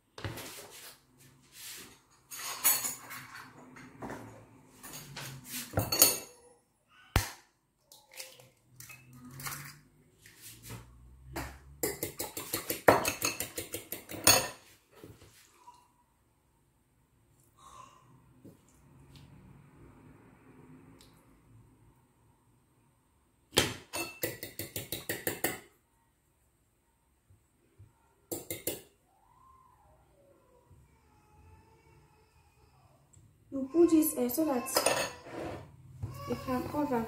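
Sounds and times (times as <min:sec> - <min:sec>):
rapid spoon taps: 0:11.8 - 0:14.3, 0:24.1 - 0:25.6
spoon scraping a dish: 0:11.8 - 0:14.6, 0:34.7 - 0:35.7.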